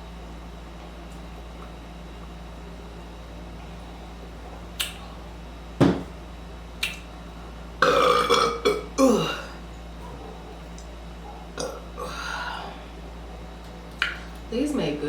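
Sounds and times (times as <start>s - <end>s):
woman burping: 7.8s - 9.6s, 11.6s - 12.2s.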